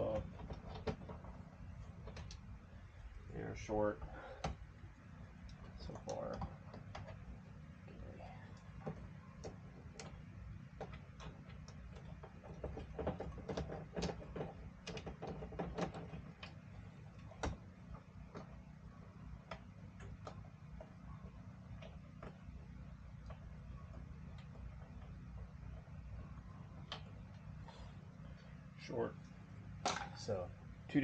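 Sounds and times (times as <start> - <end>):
steady low hum: 0.0 - 31.0.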